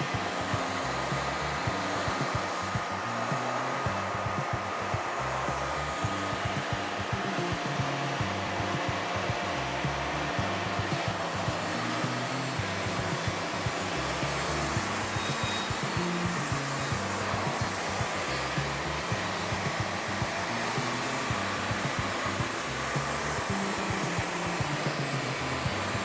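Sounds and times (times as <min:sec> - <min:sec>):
background music with bass line: 0:00.0 - 0:26.0
whooshing machine noise: 0:00.0 - 0:26.0.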